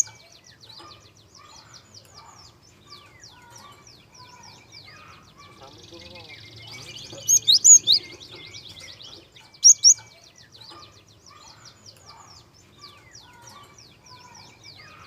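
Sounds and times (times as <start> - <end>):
loud sharp bird chirps: 0.0 - 15.0
songbird chirping: 0.0 - 15.0.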